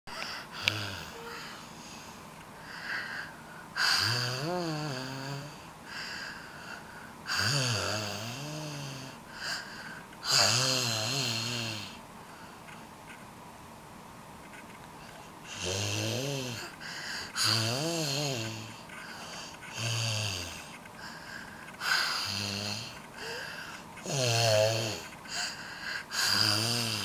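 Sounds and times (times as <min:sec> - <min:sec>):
soft breaths: 0:00.1 - 0:07.5, 0:08.4 - 0:10.3, 0:11.9 - 0:12.9, 0:16.5 - 0:19.8, 0:20.4 - 0:26.5
loud rough snores: 0:03.8 - 0:05.7, 0:07.3 - 0:09.2, 0:10.2 - 0:12.0, 0:15.5 - 0:16.7, 0:17.4 - 0:20.7, 0:21.8 - 0:27.0.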